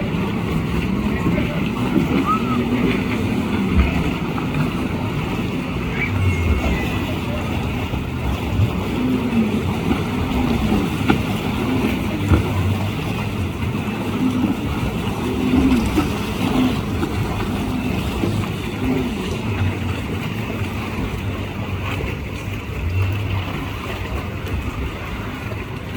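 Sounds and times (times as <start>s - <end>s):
sea waves: 0.0s - 25.9s
steady low rumble: 0.0s - 25.9s
wind buffeting microphone: 0.0s - 25.9s.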